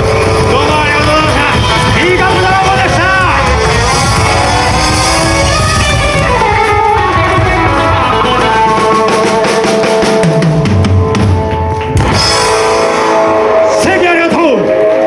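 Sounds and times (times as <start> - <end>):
electric guitar lines: 0.0 - 15.0
rockabilly band playing: 0.0 - 15.0.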